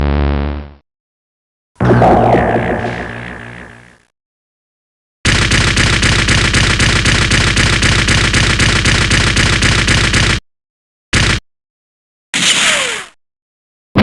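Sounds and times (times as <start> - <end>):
rapid-fire gun shots: 5.2 - 10.4, 11.2 - 11.4.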